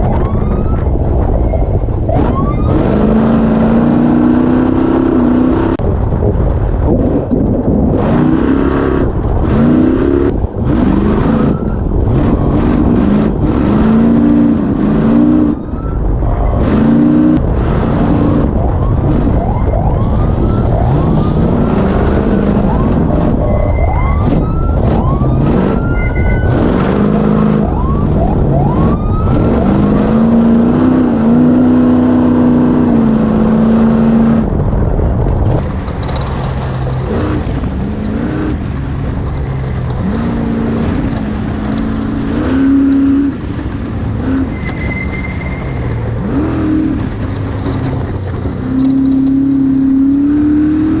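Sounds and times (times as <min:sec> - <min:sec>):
race vehicle engines revving: 0:00.0 - 0:51.0.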